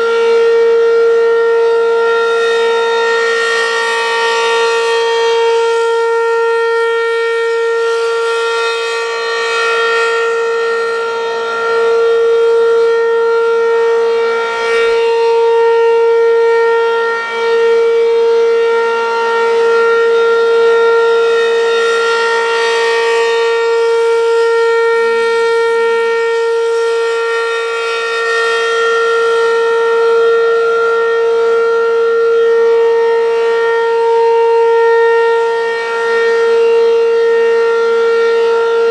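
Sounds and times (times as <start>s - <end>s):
warning siren steady tone: 0.0s - 38.9s.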